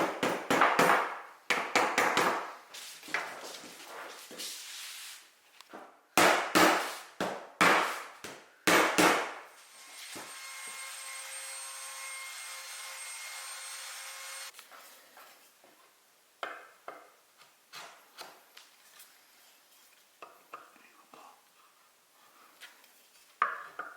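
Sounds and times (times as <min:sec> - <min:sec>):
steady hiss with faint whine: 0:02.6 - 0:06.1, 0:14.5 - 0:23.9.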